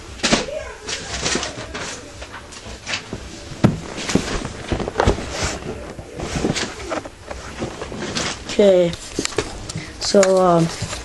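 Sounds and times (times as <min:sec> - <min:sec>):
cardboard box being handled: 0:03.6 - 0:09.6.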